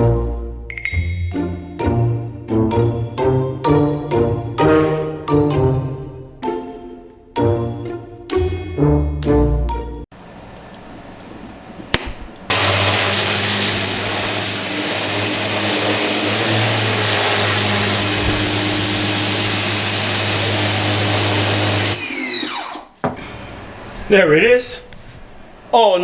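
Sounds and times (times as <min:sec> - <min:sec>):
pressure washer humming and whining: 0:12.5 - 0:22.4.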